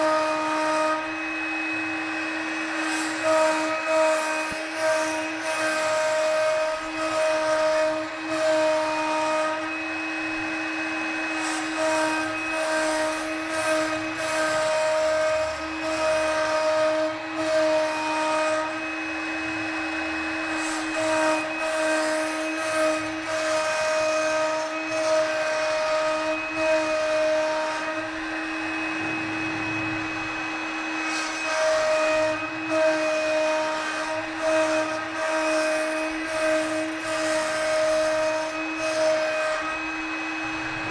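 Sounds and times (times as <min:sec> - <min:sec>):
cnc router carving wood: 0:00.0 - 0:40.9.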